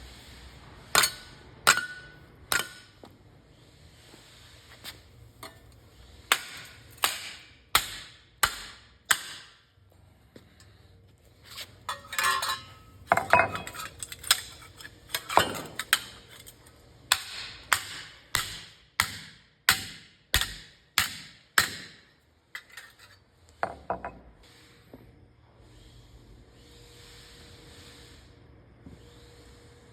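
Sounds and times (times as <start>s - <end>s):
rattling and scraping: 11.4s - 16.7s.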